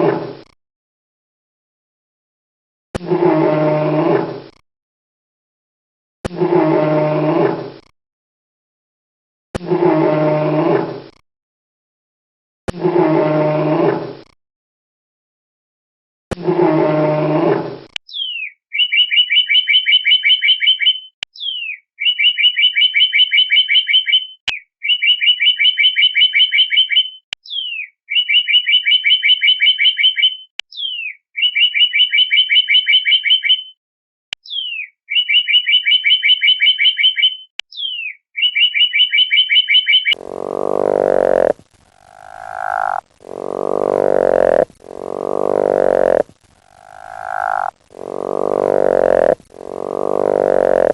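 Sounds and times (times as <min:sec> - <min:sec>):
lower animal call: 0:40.1 - 0:50.9
cow mooing: 0:40.2 - 0:41.6, 0:42.2 - 0:46.2, 0:46.9 - 0:50.9.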